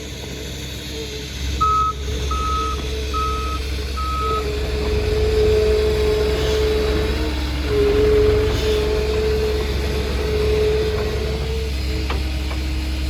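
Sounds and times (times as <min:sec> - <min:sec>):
diesel engine running: 0:00.0 - 0:13.0
steady whine: 0:00.0 - 0:13.0
backup alarm beeping: 0:01.6 - 0:04.4.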